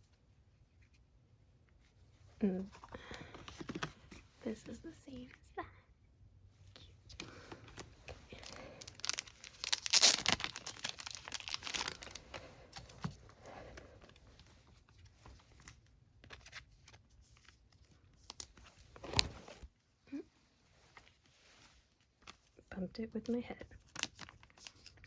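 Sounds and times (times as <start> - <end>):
packaging being torn and crinkled: 8.3 - 13.0.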